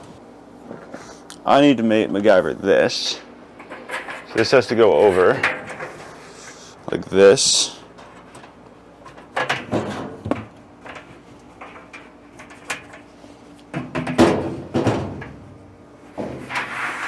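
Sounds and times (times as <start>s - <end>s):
knocks and scrapes inside metal cabinet: 3.7s - 6.7s, 7.9s - 13.1s, 13.7s - 17.0s.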